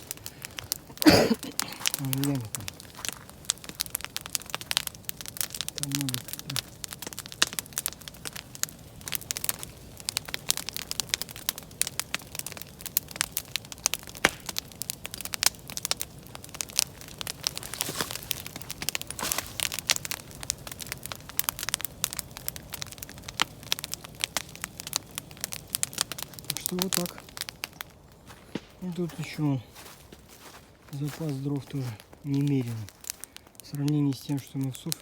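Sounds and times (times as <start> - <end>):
campfire crackling: 0.0 - 35.0.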